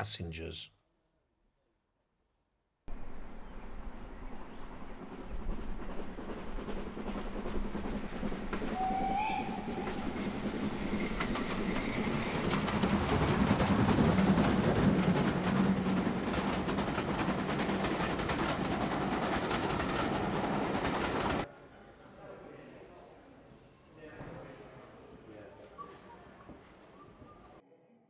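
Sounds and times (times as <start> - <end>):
steam train whistle: 8.7 - 9.9
wheels clattering over rail joints: 10.3 - 21.5.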